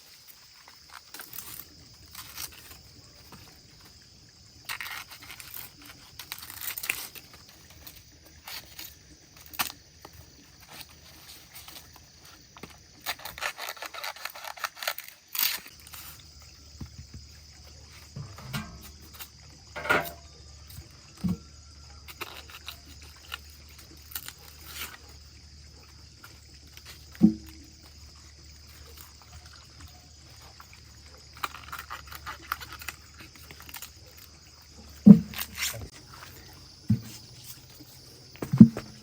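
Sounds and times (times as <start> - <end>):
rustling and tearing handling: 4.6 - 9.8, 10.6 - 16.2, 31.4 - 34.4.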